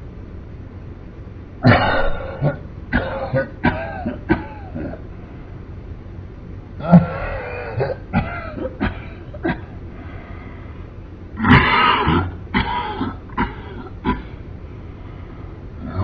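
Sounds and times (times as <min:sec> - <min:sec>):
man coughing: 0:01.6 - 0:05.1, 0:06.8 - 0:09.8, 0:11.4 - 0:14.4.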